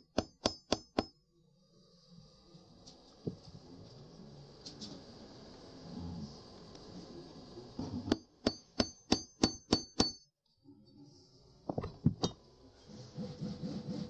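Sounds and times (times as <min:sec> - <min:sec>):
metal-on-metal taps: 0:11.7 - 0:12.4.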